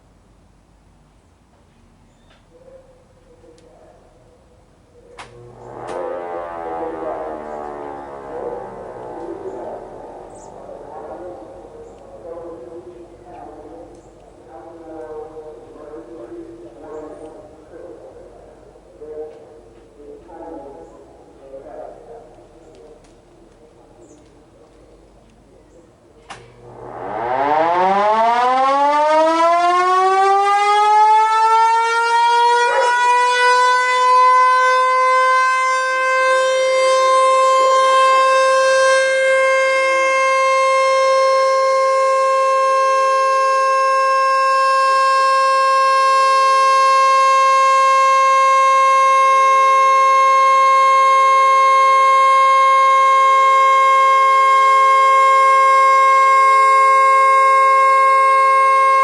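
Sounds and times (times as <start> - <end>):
motor-driven siren wailing: 5.2 - 23.1, 26.6 - 59.0.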